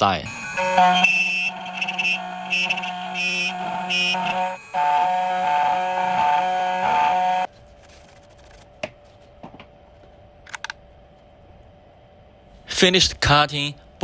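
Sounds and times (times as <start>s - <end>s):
music of held tones: 0.2s - 7.5s.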